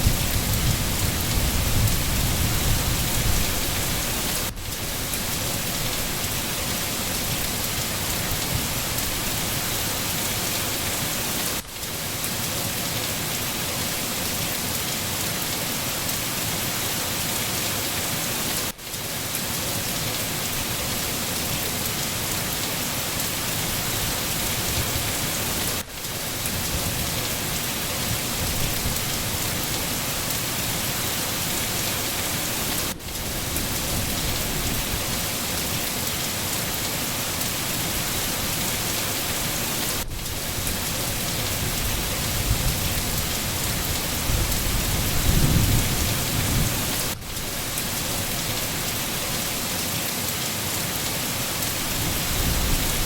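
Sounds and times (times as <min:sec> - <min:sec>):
heavy rain: 0:00.0 - 0:53.0
low thunder rumble: 0:44.2 - 0:47.1.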